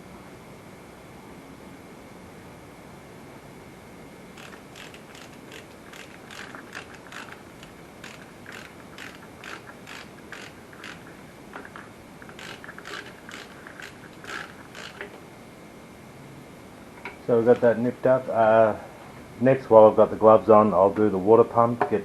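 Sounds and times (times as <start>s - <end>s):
ratchet wrench clicking: 4.4s - 15.2s.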